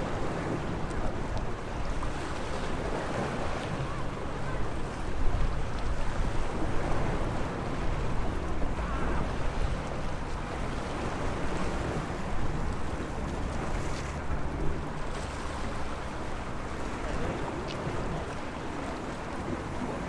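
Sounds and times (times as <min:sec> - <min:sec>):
sea waves washing on shore: 0:00.0 - 0:20.0.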